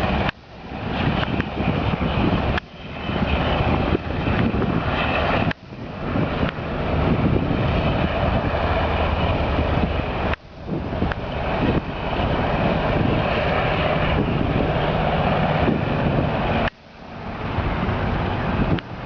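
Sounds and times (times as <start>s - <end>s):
helicopter flying by: 0.0s - 19.0s.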